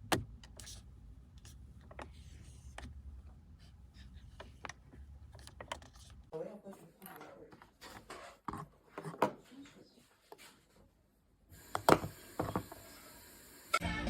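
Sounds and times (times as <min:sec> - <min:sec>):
handling clicks and rubbing: 0:00.0 - 0:09.2.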